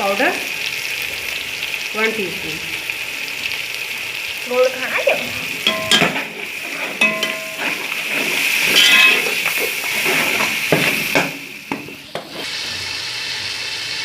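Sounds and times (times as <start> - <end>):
spices sizzling in hot oil: 0.0 - 14.0
spoon clinking against pot: 5.6 - 6.4, 7.0 - 8.0, 8.7 - 9.6
metal spoon stirring: 5.6 - 11.3.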